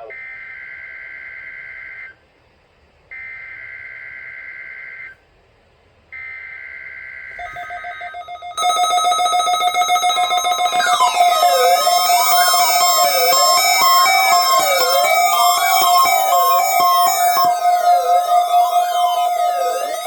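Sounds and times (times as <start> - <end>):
electronic held tones: 7.4 - 20.0
two-tone digital warble bursts: 7.4 - 20.0.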